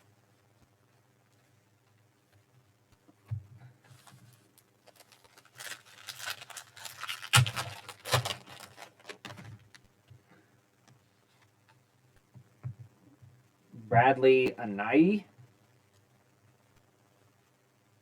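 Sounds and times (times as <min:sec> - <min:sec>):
plastic packaging crinkling: 0:03.8 - 0:09.9.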